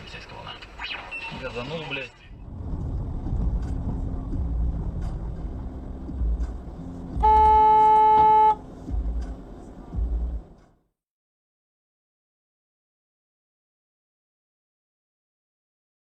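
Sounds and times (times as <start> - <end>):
moving vehicle rumble: 0.0 - 10.8
car horn blast: 7.2 - 8.6.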